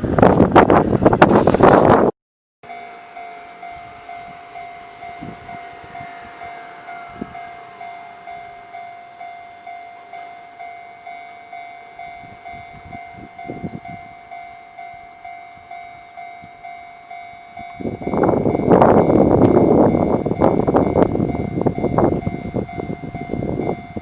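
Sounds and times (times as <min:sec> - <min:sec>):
train passing: 0:00.0 - 0:24.0
level-crossing warning bell ringing: 0:02.6 - 0:24.0.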